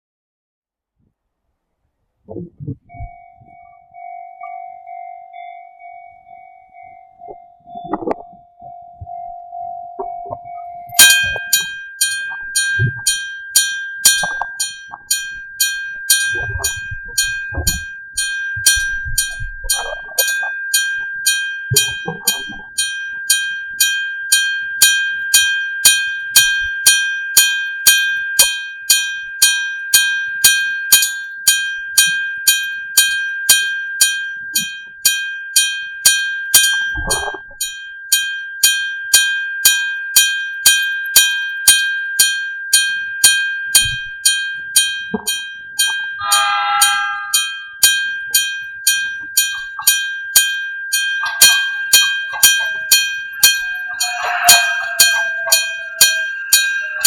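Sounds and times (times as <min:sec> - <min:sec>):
low rumbles: 0:02.2 - 0:06.1, 0:06.8 - 0:22.8
level crossing warning bell: 0:02.9 - 0:57.0.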